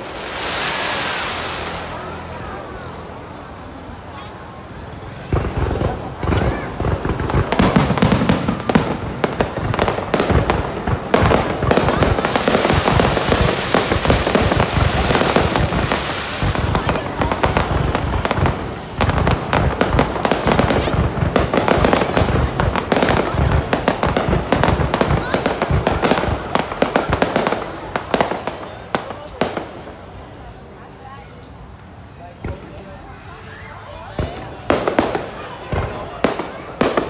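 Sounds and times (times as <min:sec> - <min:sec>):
fireworks bangs and crackles: 0:00.0 - 0:37.0.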